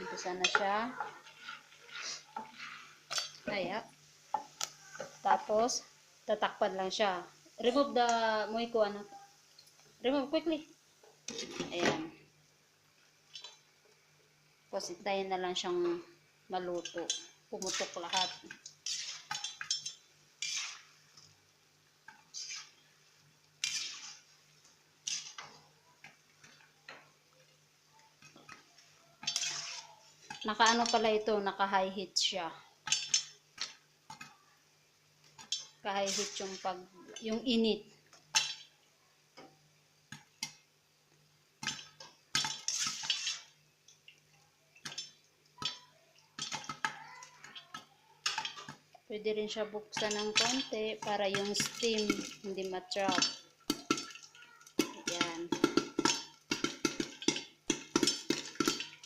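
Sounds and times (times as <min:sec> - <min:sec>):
popcorn popping in a pot: 0:00.0 - 0:09.0, 0:13.2 - 0:13.9, 0:14.7 - 0:34.4, 0:35.1 - 0:59.0
knocks and clinks in metal pot: 0:16.8 - 0:20.8, 0:41.6 - 0:43.5, 0:44.8 - 0:48.8, 0:53.0 - 0:59.0.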